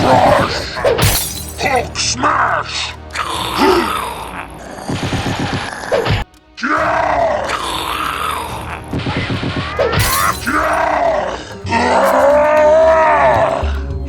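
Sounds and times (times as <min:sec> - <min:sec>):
crash: 0:00.0 - 0:02.0, 0:08.9 - 0:11.1
background music: 0:00.0 - 0:14.0.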